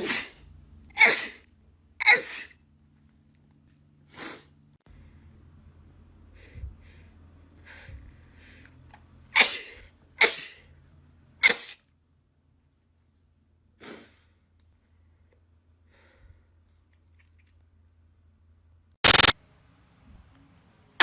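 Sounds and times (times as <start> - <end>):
person sneezing: 0.0 - 0.4, 1.0 - 1.4, 2.0 - 2.5, 9.4 - 10.6, 11.4 - 11.8.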